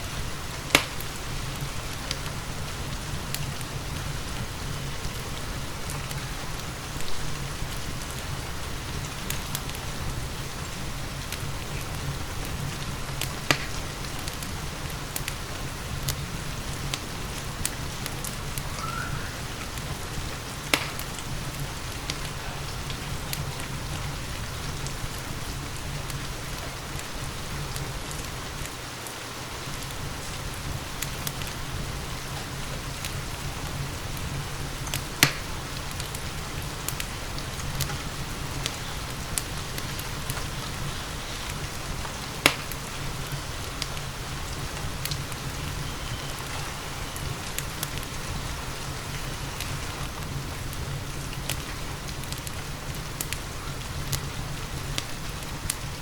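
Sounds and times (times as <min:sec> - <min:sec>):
steady rain: 0:00.0 - 0:56.0
wood fire crackling: 0:00.0 - 0:56.0
sharp wood pops: 0:00.7 - 0:01.0, 0:13.5 - 0:14.4, 0:20.7 - 0:21.2, 0:35.2 - 0:35.5, 0:42.4 - 0:42.8.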